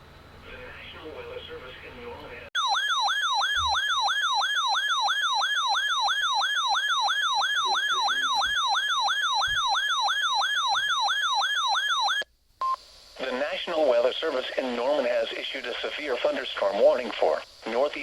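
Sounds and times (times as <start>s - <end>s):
electronic siren yelp: 2.6s - 12.3s
warning announcements voice: 7.1s - 8.9s.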